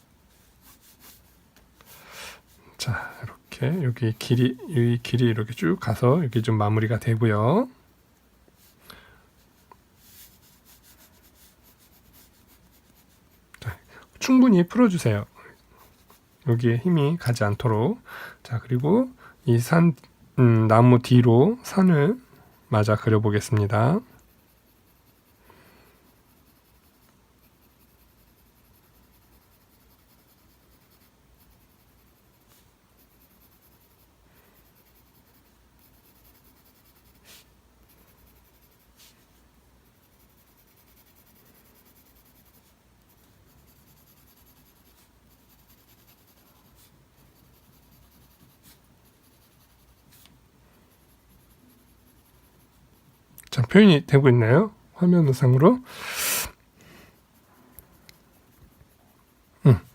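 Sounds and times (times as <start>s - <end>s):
pencil scratching on paper: 0.3s - 1.9s, 9.6s - 17.8s, 22.6s - 53.3s, 57.1s - 59.9s.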